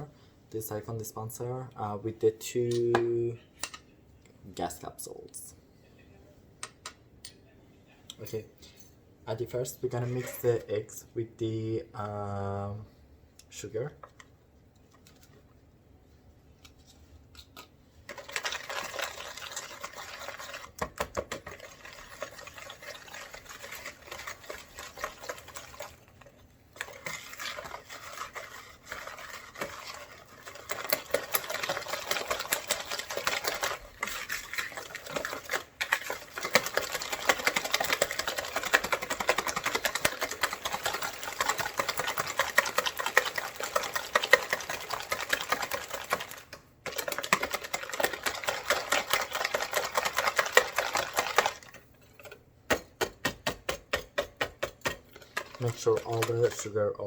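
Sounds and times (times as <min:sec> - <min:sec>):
whisk clattering against bowl: 0:18.1 - 0:57.0.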